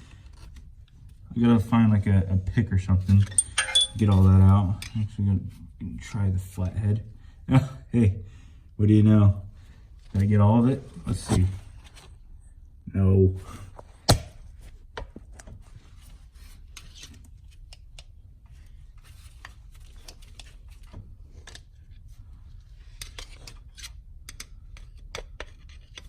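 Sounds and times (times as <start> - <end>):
screwdriver scraping metal: 3.2 - 4.2.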